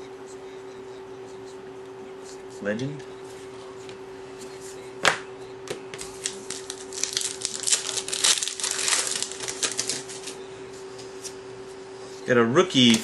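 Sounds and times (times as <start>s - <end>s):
faint steady hum: 0.0s - 13.0s
plastic wrapper crinkling: 6.0s - 10.4s
plastic wrapper torn open: 6.1s - 10.3s.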